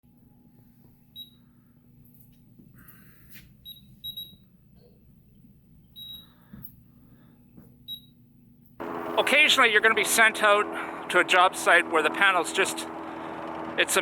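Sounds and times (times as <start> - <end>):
low hum: 8.8 - 14.0.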